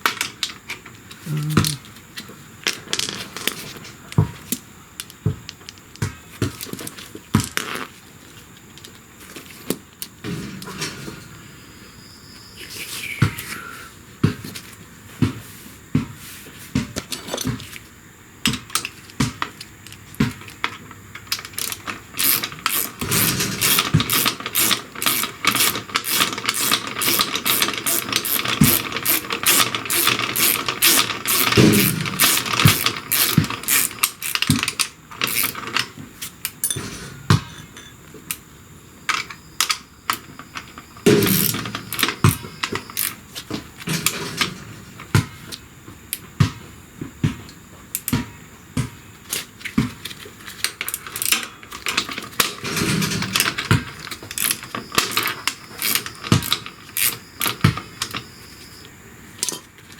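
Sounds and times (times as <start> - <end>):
ratchet wrench clicking: 21.6 - 35.6, 41.2 - 43.2, 54.3 - 58.1.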